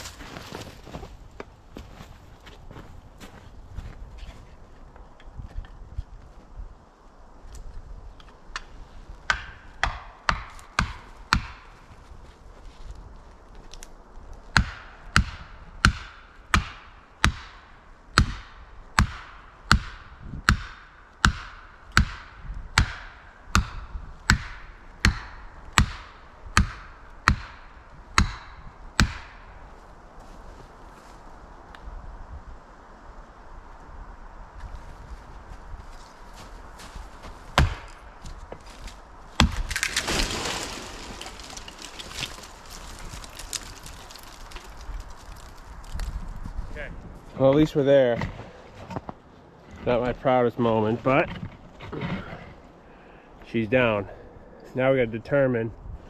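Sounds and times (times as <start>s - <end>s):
hand tool striking tree: 9.3s - 11.7s, 18.2s - 29.4s, 37.6s - 38.0s.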